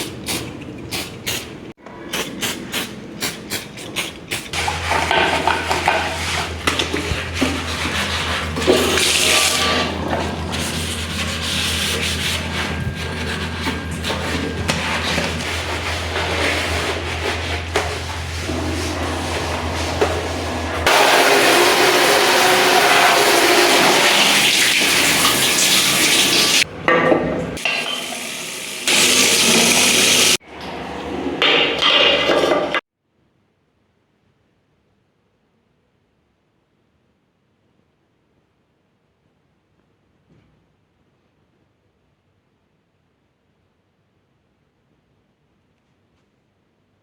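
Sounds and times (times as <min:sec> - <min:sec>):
sponge scrubbing a surface: 0:02.2 - 0:26.6
water running from tap into sink: 0:04.6 - 0:10.6, 0:20.9 - 0:26.6, 0:27.6 - 0:30.4.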